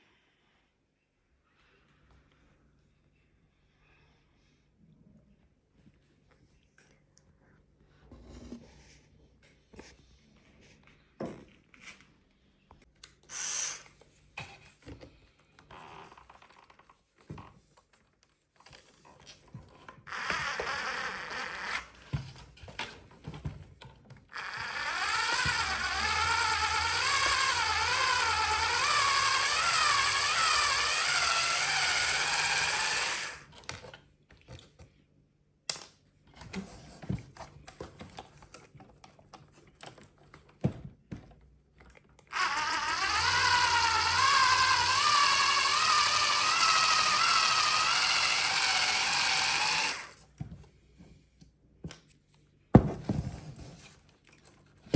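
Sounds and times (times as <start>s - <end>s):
toy electric motor whining: 20.1s - 22.2s, 24.3s - 33.5s, 42.3s - 50.2s.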